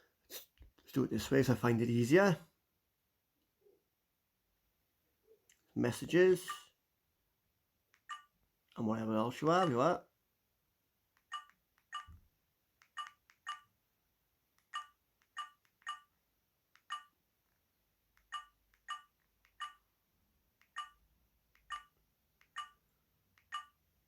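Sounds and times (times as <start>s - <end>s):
phone keypad beeps: 11.3s - 12.2s, 12.9s - 13.7s, 14.7s - 16.2s, 16.8s - 17.2s, 18.2s - 19.8s, 20.7s - 21.0s, 21.7s - 22.8s, 23.4s - 23.8s.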